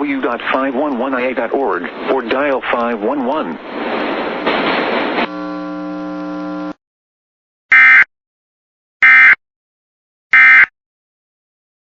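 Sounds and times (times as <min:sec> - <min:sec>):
steady buzzing tone: 0:05.2 - 0:06.8.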